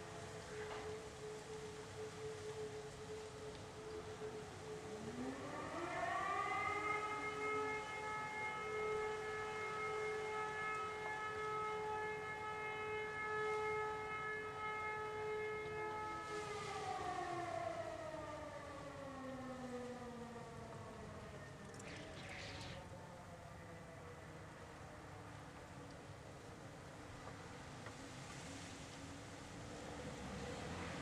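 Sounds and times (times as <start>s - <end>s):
siren winding up and down: 21.6s - 22.9s.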